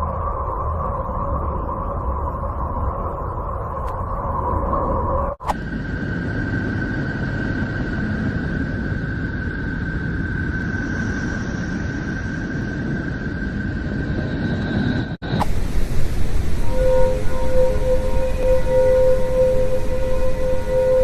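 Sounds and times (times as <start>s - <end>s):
steady low noise: 0.0s - 21.0s
steady high tone: 14.5s - 21.0s.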